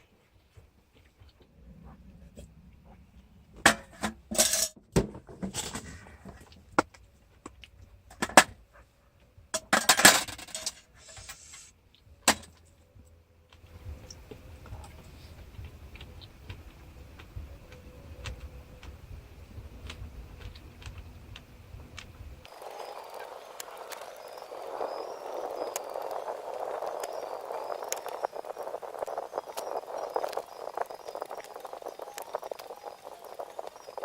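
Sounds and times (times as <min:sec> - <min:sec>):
steady low rumble: 0:01.3 - 0:04.0, 0:13.6 - 0:34.0
camp dishes and utensils clinking: 0:03.7 - 0:06.1
faint ticks: 0:13.5 - 0:34.0.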